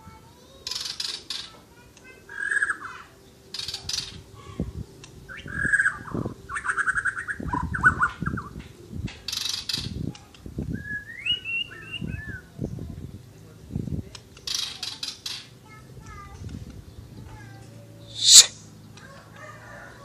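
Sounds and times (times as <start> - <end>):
songbird singing: 10.8 - 12.8.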